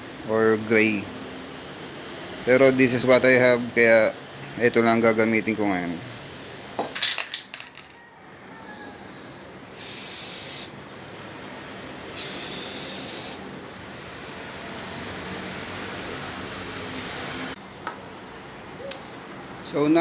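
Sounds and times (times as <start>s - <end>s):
spray paint can hissing: 9.7s - 10.8s, 12.1s - 13.4s.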